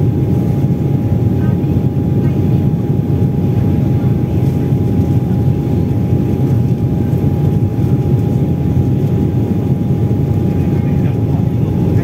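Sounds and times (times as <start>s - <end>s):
airliner engines and airflow roar: 0.0s - 12.0s.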